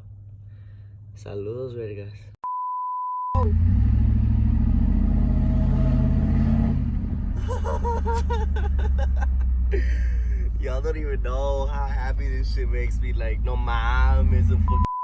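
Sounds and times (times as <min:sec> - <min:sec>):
pickup engine rumbling: 0:03.4 - 0:14.9
electronic beep tone: 0:14.7 - 0:15.0.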